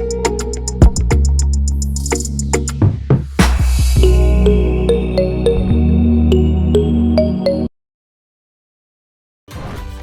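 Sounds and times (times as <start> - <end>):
electronic background music: 0.0 - 7.7.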